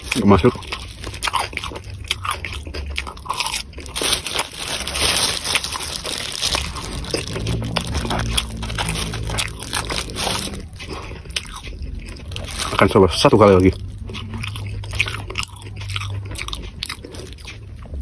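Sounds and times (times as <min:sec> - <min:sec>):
wet chewing clicks: 0:05.7 - 0:18.0.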